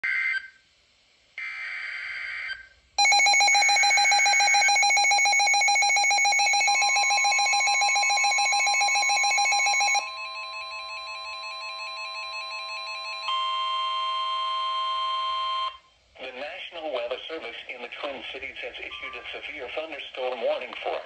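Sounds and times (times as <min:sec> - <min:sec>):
stepping electronic beeps: 0:03.0 - 0:10.0.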